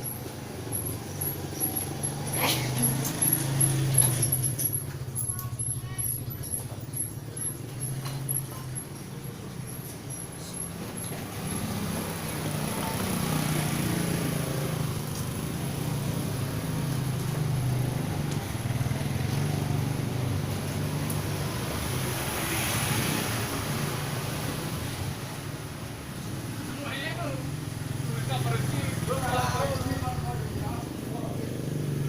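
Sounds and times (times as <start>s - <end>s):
vehicle engine humming: 0.0s - 32.0s.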